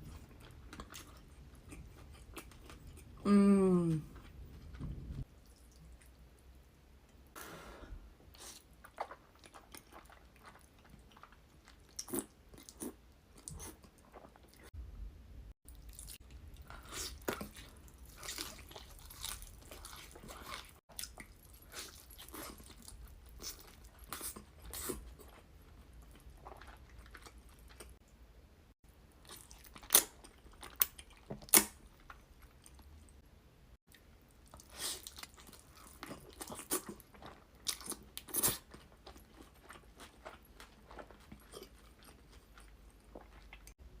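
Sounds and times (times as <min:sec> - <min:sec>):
chewing: 0:00.0 - 0:03.2, 0:08.3 - 0:14.8, 0:15.7 - 0:28.0, 0:33.9 - 0:43.8.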